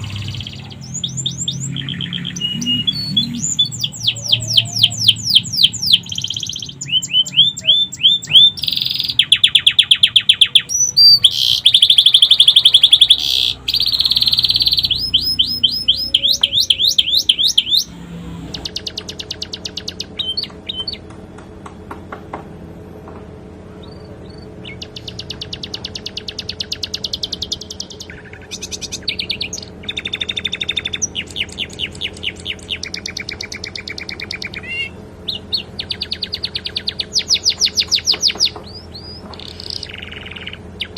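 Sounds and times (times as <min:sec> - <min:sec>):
canary singing: 0:00.0 - 0:21.3, 0:23.7 - 0:40.9
steady low hum: 0:00.0 - 0:40.9.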